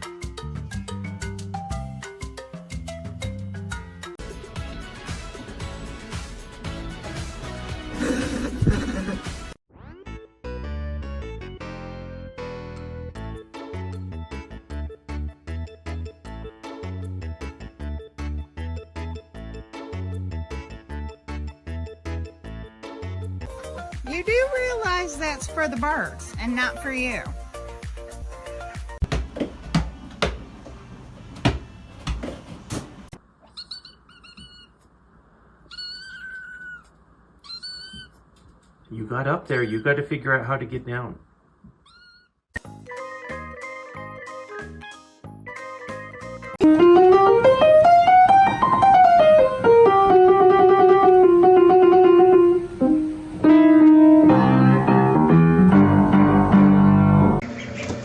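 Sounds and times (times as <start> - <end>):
piano melody: 0.0 - 4.2, 10.1 - 14.6, 43.3 - 57.5
kitten mewing: 35.7 - 38.2
low piano chords: 46.6 - 57.4.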